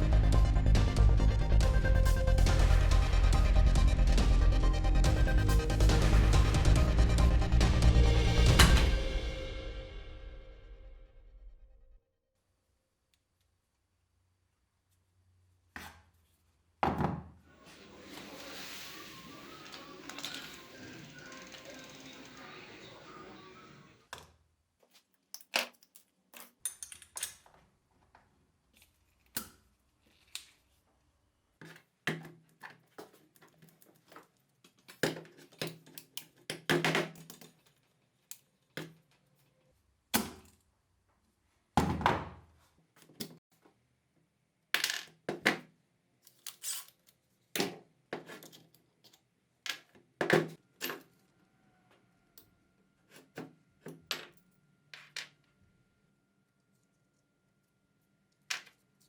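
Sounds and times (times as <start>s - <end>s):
metal parts and tools clinking: 25.3s - 27.6s, 32.6s - 38.6s, 46.2s - 47.2s.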